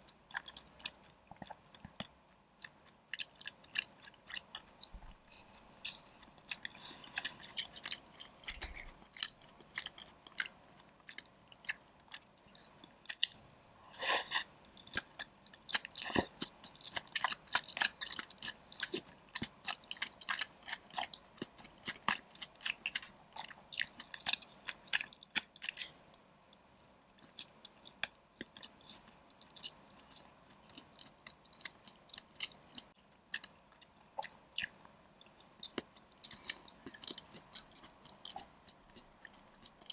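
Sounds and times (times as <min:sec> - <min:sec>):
wet chewing: 0:00.3 - 0:26.0.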